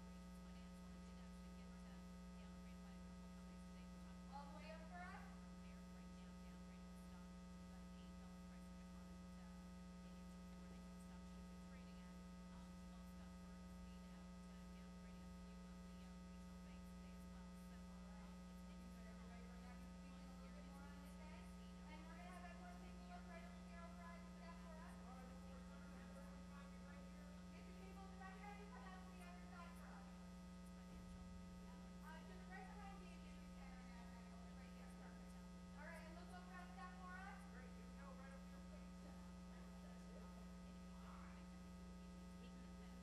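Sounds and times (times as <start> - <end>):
electrical mains hum: 0.0 - 43.0
faint voice: 31.6 - 43.0.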